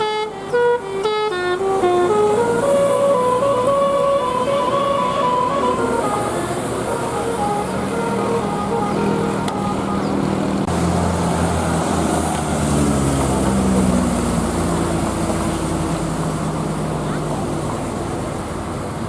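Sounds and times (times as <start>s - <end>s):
musical air horn tune: 0.0s - 10.6s
heavy bus engine running: 0.0s - 19.0s.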